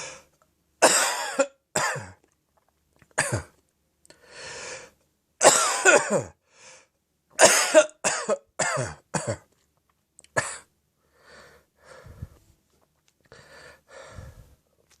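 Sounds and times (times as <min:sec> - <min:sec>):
quiet breaths: 0:00.0 - 0:00.5, 0:04.0 - 0:05.1, 0:06.4 - 0:07.1, 0:10.9 - 0:15.0
deep phlegmy cough: 0:00.8 - 0:02.2, 0:03.2 - 0:03.6, 0:05.4 - 0:06.4, 0:07.4 - 0:09.6, 0:10.4 - 0:10.7.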